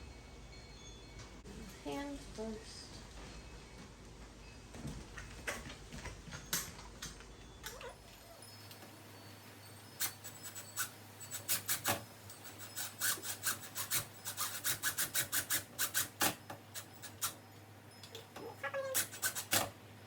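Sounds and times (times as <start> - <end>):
screwdriver rasping on screws: 10.0 - 17.4, 19.0 - 19.7.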